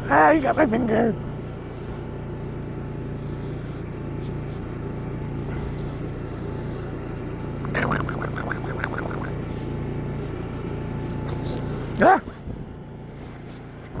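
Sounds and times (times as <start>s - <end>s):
steady low hum: 0.0s - 14.0s
puppy yipping and growling: 7.7s - 9.4s.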